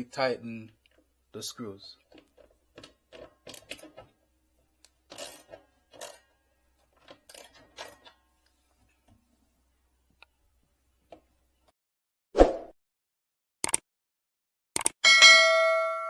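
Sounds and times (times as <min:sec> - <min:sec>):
spanner clinking on metal bracket: 0:02.1 - 0:04.1, 0:05.1 - 0:06.3, 0:07.0 - 0:08.2.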